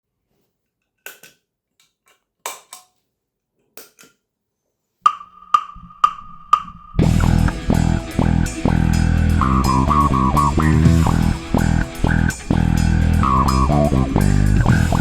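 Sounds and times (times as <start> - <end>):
wood-block metronome clicks: 5.1 - 15.0.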